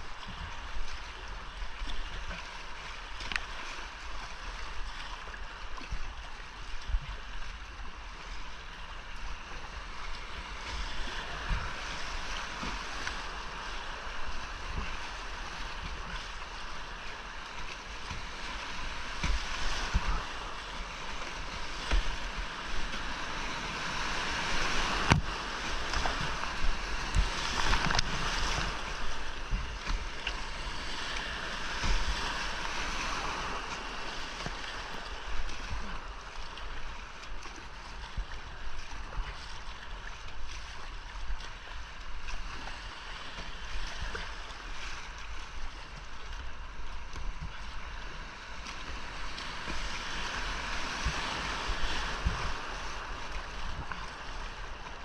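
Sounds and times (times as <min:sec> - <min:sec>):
whitewater rushing: 0:11.2 - 0:36.2.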